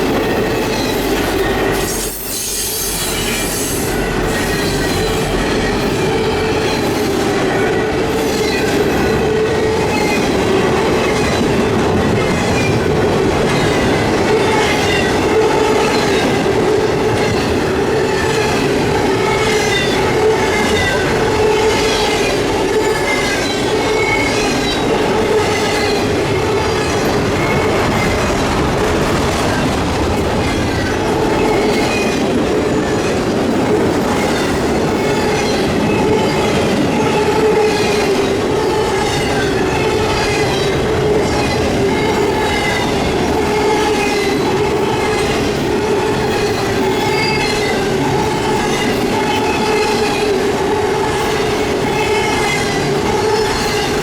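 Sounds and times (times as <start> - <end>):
train wheels squealing: 0.0 - 7.2, 8.1 - 10.4, 13.6 - 28.3, 34.2 - 50.3
clickety-clack of rail joints: 0.0 - 54.0
train rumble: 0.0 - 54.0.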